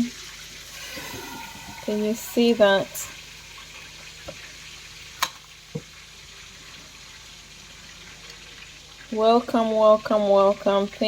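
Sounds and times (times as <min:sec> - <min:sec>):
background hiss: 0:00.0 - 0:08.4.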